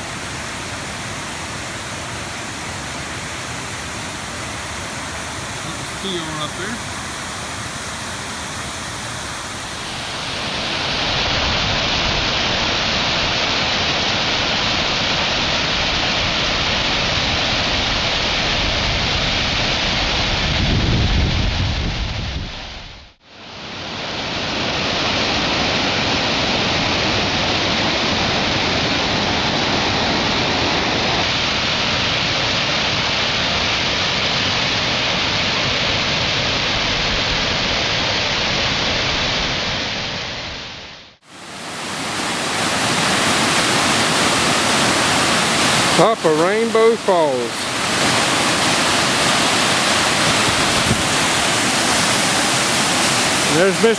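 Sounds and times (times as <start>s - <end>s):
waterfall roaring: 0.0s - 17.1s, 41.2s - 53.9s.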